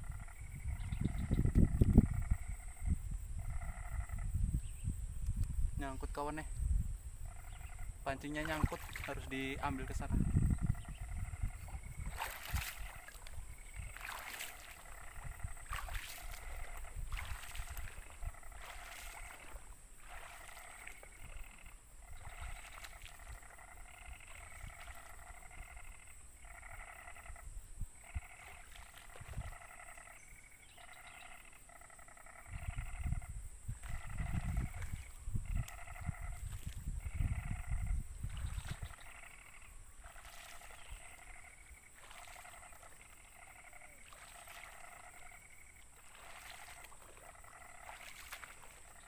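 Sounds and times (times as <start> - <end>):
high insect drone: 0.0 - 49.0
low rumbling movement noise: 9.2 - 26.0
animal calling in pulsed phrases: 9.2 - 27.4.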